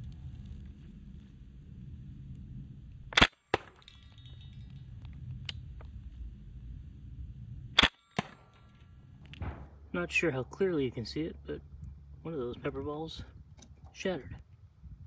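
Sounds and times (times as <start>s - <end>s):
low rumble: 8.8s - 15.0s
weaker echo crack: 9.2s - 12.0s
air rifle shots: 9.3s - 10.0s.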